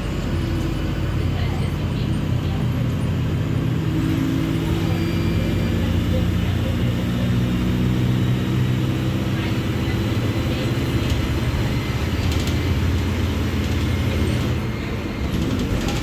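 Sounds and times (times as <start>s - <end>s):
bus diesel engine running: 0.0s - 16.0s.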